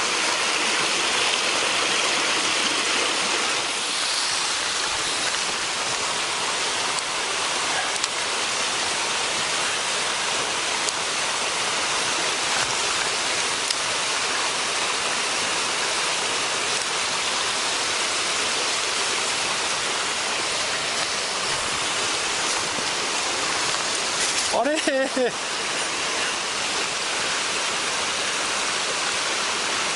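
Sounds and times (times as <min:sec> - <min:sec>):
stream rushing over rocks: 0:00.0 - 0:29.9.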